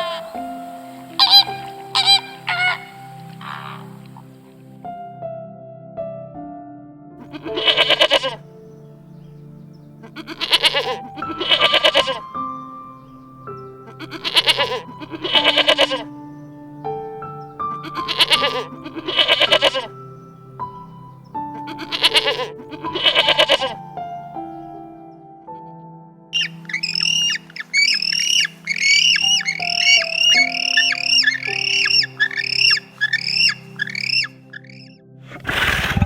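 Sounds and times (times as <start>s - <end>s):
background music: 0.0s - 36.0s
goat or sheep bleating: 7.2s - 8.4s, 10.0s - 12.2s, 13.9s - 16.1s, 17.8s - 19.9s, 21.6s - 23.8s.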